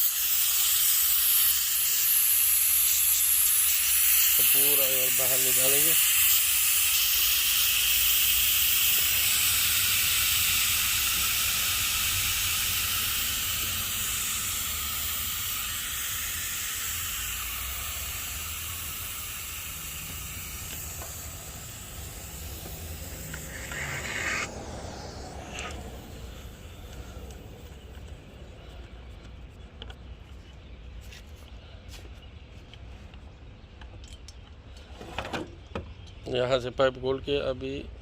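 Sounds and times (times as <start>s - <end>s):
pressurised air hissing out: 0.0s - 28.8s.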